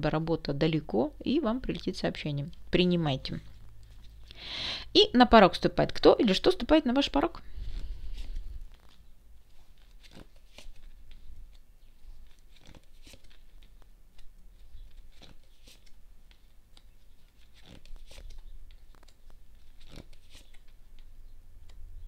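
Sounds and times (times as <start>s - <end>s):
cards rustling and snapping: 7.6s - 21.1s.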